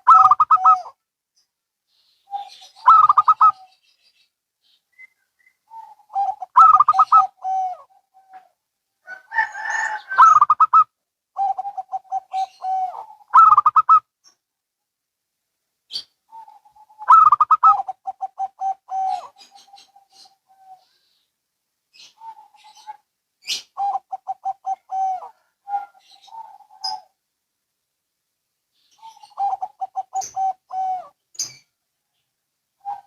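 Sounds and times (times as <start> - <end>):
doves cooing: 0.0 - 1.0, 2.3 - 3.8, 5.7 - 14.0, 16.3 - 21.0, 22.0 - 27.2, 29.0 - 31.7, 32.8 - 33.0.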